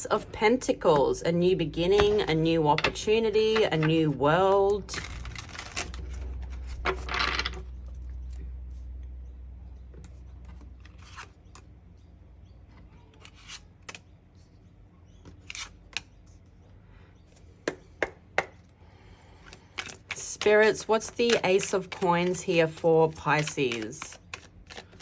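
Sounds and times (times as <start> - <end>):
low hum: 0.0 - 12.6
card rustle: 3.5 - 7.2, 19.5 - 25.0
cards tapping and sliding: 19.5 - 25.0.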